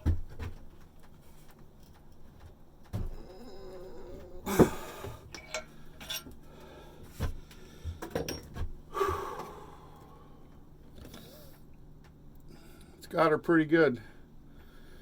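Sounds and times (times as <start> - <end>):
ringing metal clank: 5.3 - 6.3.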